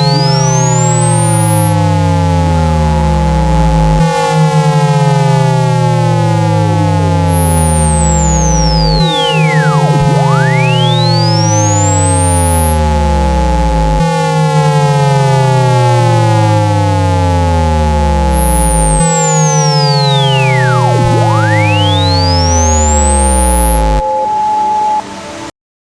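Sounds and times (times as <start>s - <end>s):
falling low tones: 0.0s - 4.0s, 5.4s - 14.7s, 16.2s - 25.5s
rising and falling pure tone: 0.0s - 25.5s
steady mid-pitched tones: 0.0s - 25.5s.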